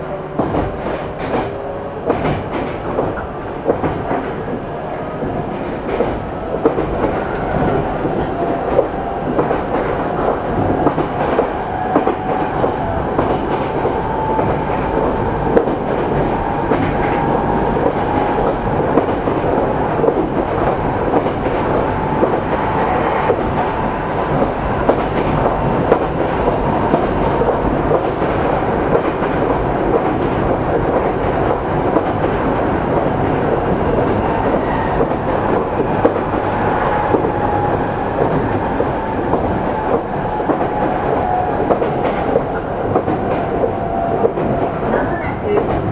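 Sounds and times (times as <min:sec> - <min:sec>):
train wheels rumbling on rails: 0:00.0 - 0:45.9.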